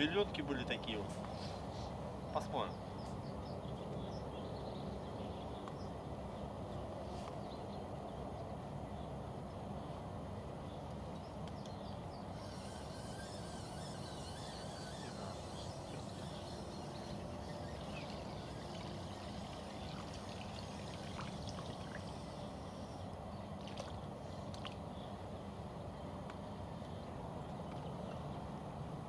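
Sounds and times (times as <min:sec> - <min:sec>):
river water rushing: 0:18.8 - 0:22.6.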